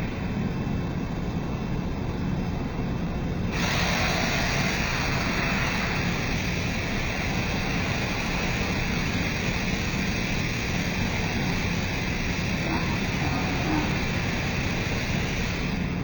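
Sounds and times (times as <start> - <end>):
machine low hum: 0.0 - 16.0
loud steady hiss: 3.5 - 16.0.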